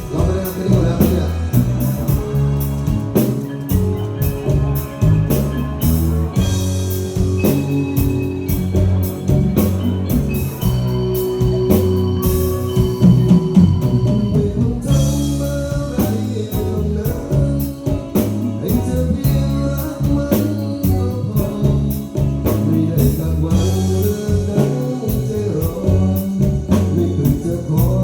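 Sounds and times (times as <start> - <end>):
bass line: 0.0 - 28.0
steady drum beat: 0.0 - 28.0.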